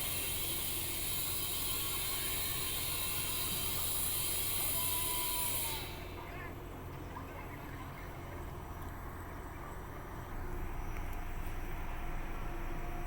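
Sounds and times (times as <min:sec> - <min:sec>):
constant low hum: 0:05.7 - 0:13.0.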